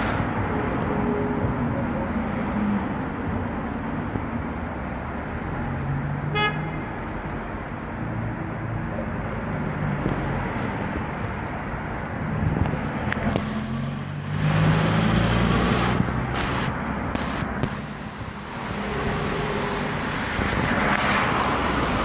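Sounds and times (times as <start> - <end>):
car engines humming: 0.0 - 22.0
vehicle passing: 12.8 - 22.0.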